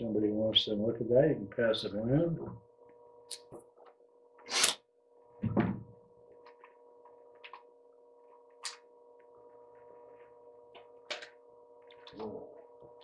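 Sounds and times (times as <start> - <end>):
electrical hum: 0.0 - 13.0
knock: 5.4 - 5.9.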